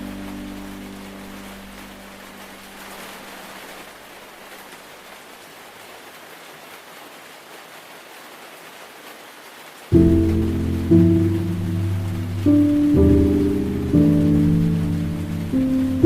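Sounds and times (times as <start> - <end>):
piano note: 0.0 - 3.1, 9.9 - 16.0
heavy rain on foliage: 0.0 - 16.0.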